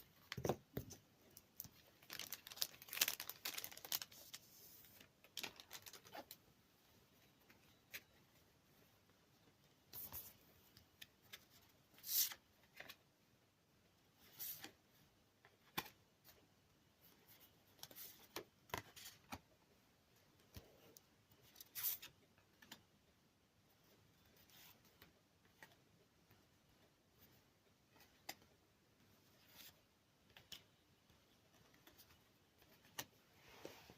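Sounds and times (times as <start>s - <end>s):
comic book packaging rustling: 1.6s - 6.4s.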